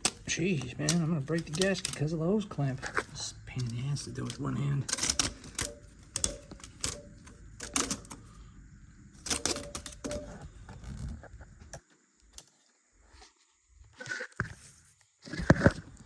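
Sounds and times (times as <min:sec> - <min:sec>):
metallic clicks and clanks: 0:00.0 - 0:02.2, 0:03.6 - 0:08.3, 0:09.2 - 0:11.0.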